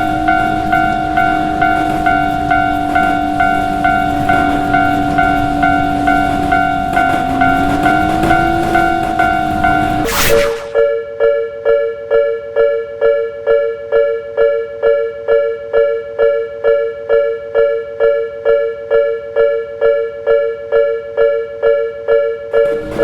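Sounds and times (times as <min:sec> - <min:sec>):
level-crossing warning bell: 0:00.0 - 0:10.1, 0:11.6 - 0:23.0.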